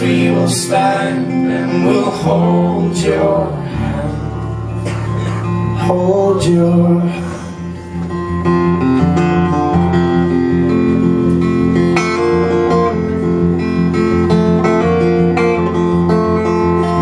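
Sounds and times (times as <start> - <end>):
acoustic band playing: 0.0 - 17.0
acoustic guitar strumming: 0.0 - 17.0.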